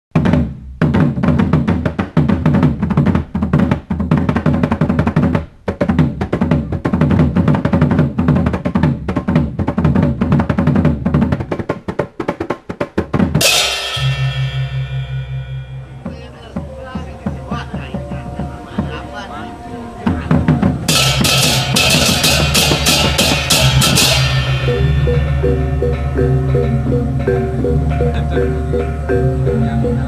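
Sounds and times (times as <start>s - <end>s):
drums beaten fast: 0.1s - 30.0s
cymbal crash: 13.4s - 30.0s
ringing low pulsing tone: 14.0s - 30.0s.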